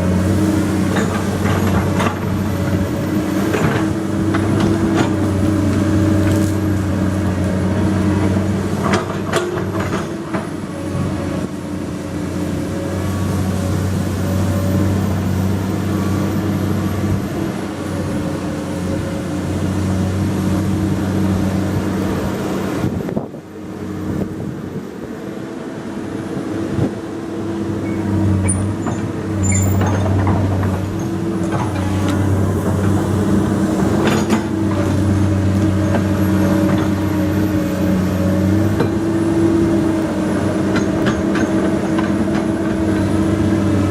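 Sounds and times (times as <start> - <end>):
excavator diesel engine: 0.0 - 43.9.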